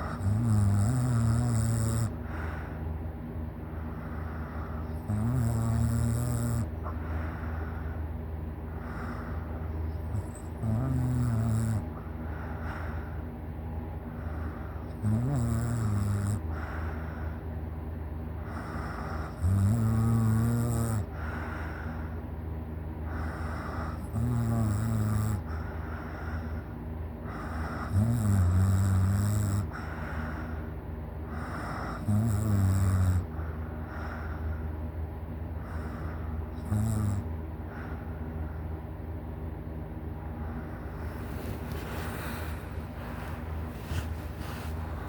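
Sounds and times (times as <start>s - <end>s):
person snoring loudly: 0.0s - 2.2s, 5.0s - 6.7s, 10.1s - 11.9s, 14.9s - 16.5s, 18.5s - 21.2s, 23.6s - 25.5s, 27.4s - 29.8s, 31.4s - 33.3s, 36.6s - 37.3s
soft breaths: 2.0s - 15.0s, 16.4s - 19.5s, 21.0s - 24.2s, 25.4s - 39.1s, 40.0s - 45.0s.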